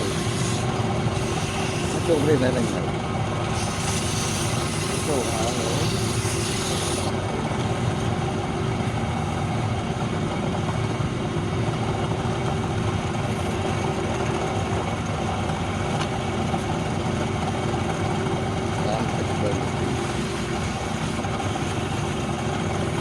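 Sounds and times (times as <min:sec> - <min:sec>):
wood lathe humming: 0:00.0 - 0:10.8, 0:11.7 - 0:23.0.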